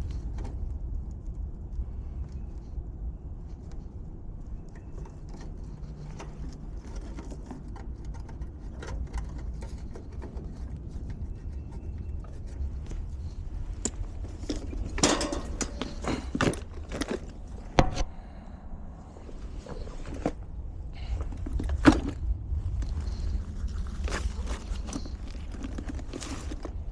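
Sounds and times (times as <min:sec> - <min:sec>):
steady low rumble: 0:00.0 - 0:26.9
knocks and clatter: 0:13.6 - 0:18.2.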